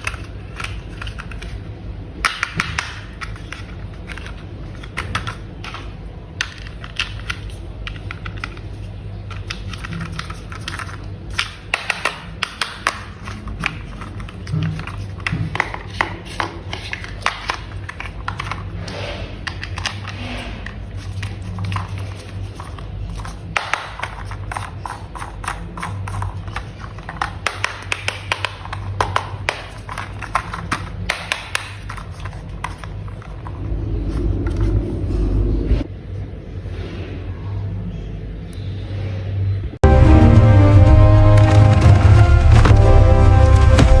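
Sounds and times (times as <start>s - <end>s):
plastic toy parts clicking: 0.0s - 33.5s
low rumble: 33.1s - 36.4s, 39.8s - 44.0s.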